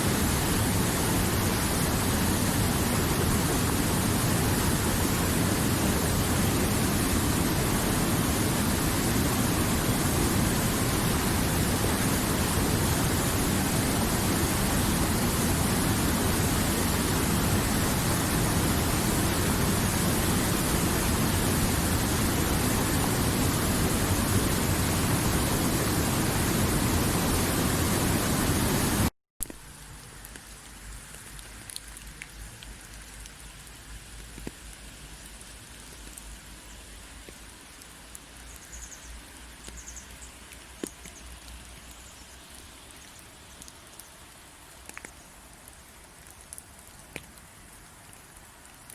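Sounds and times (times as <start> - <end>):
rushing water: 0.0 - 29.1
quiet rain: 0.0 - 48.9
water drips: 29.4 - 48.9.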